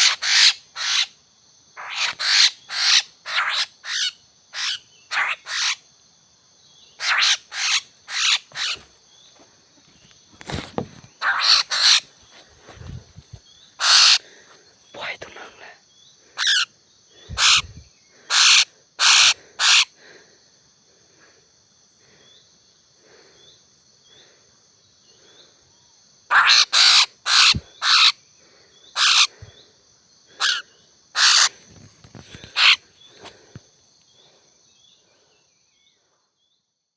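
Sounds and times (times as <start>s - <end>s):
birds giving harsh calls: 0.0s - 1.2s, 1.8s - 5.8s, 6.9s - 15.7s, 16.3s - 20.1s, 26.3s - 28.2s, 28.9s - 29.6s, 30.3s - 33.6s.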